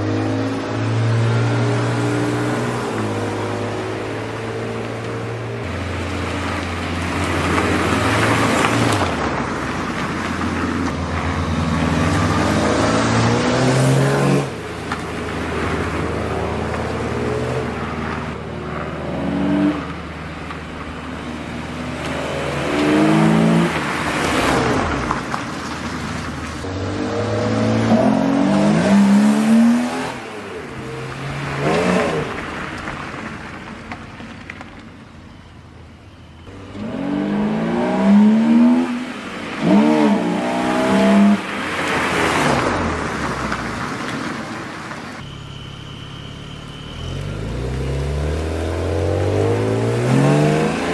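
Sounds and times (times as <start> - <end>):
car engine revving through gears: 0.0 - 34.6, 36.3 - 50.9.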